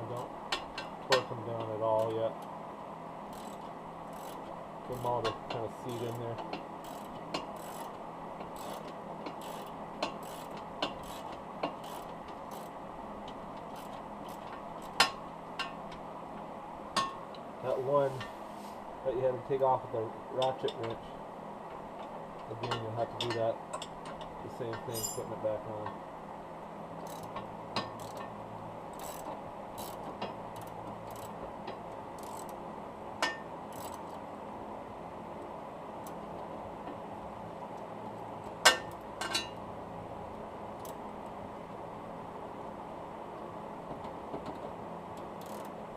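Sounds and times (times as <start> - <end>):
hand ratchet clicking: 3.3 - 6.2, 6.8 - 12.7, 27.0 - 28.3, 28.9 - 31.4, 32.2 - 32.6, 33.7 - 34.2, 45.4 - 45.7.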